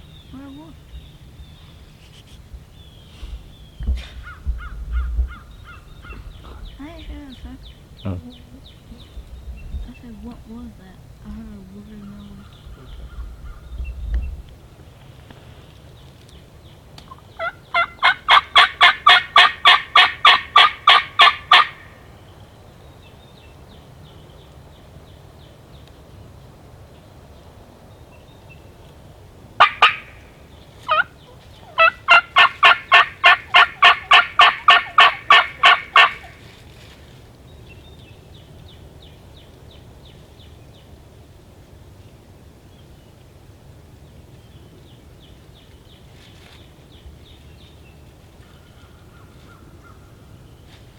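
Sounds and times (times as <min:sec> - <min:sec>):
turkey calling: 0:00.0 - 0:09.4, 0:17.0 - 0:22.0, 0:29.6 - 0:36.6.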